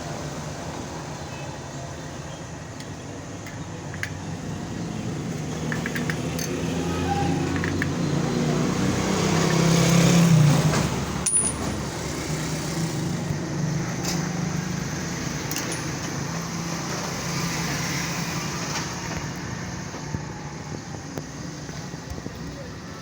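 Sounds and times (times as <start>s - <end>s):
sharp clicks: 5.4s - 6.6s.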